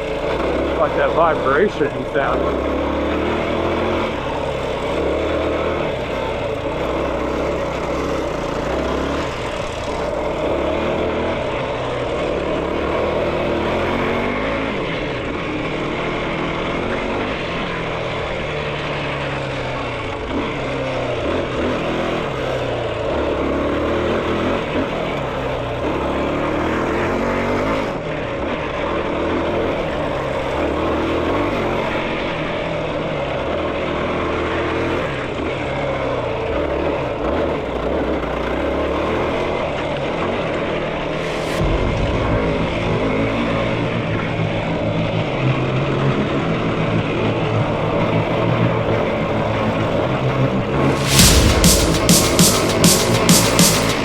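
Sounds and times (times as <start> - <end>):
quad engine revving: 0.0 - 17.8.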